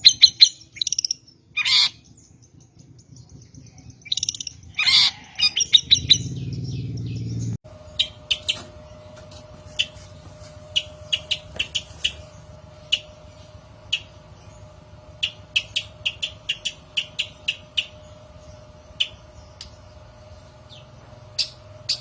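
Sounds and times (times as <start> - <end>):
steady low hum: 0.0 - 22.0
bird harsh rasping call: 1.6 - 2.0, 4.2 - 6.4, 9.7 - 13.2
bird short sharp chips: 7.9 - 13.2.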